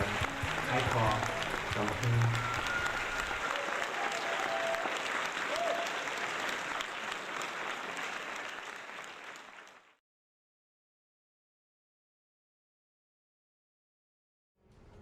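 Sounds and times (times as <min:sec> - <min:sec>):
dense clapping: 0:00.0 - 0:10.0.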